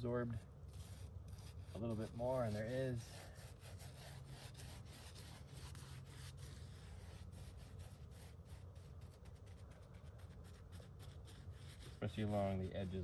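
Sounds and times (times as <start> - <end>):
low steady hum: 0.0 - 13.0
paintbrush rubbing on wood: 0.2 - 13.0.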